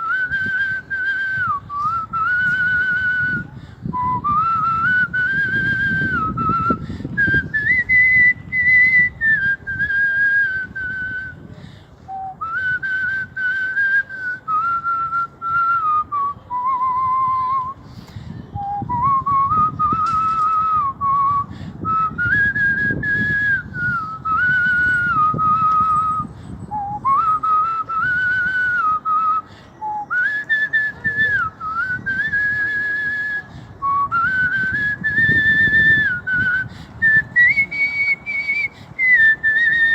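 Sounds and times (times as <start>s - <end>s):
man whistling a melody: 0.0s - 39.9s.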